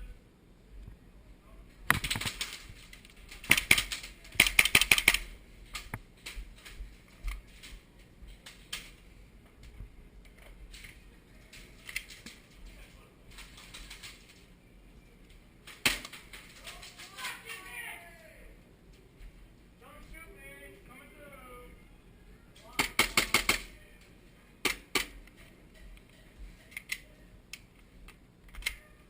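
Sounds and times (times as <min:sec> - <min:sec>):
airsoft pistols firing: 0:03.3 - 0:05.3, 0:15.7 - 0:16.5, 0:22.8 - 0:23.7.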